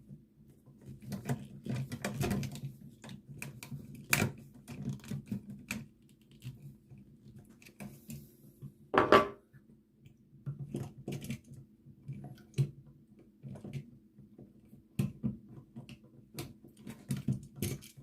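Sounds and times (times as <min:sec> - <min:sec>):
small clicks and taps: 0:10.0 - 0:18.0.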